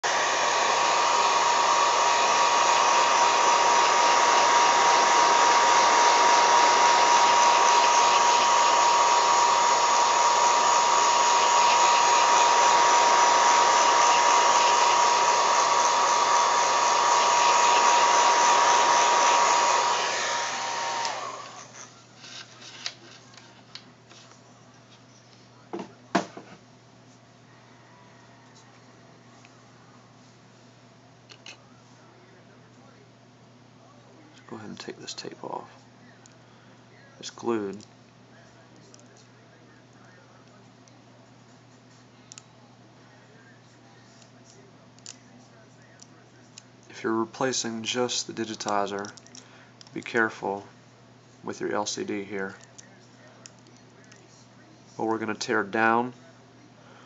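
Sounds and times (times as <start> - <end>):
hot-air blower whining: 0.0 - 22.0.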